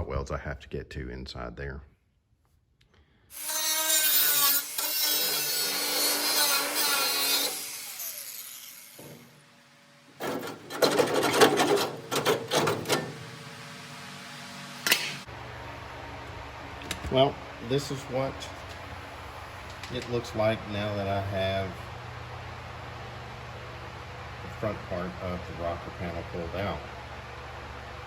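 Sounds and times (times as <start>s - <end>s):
power tool cutting sheet metal: 3.3s - 15.3s
metal scraping and knocks: 10.2s - 13.4s
sharp click: 14.8s - 15.2s.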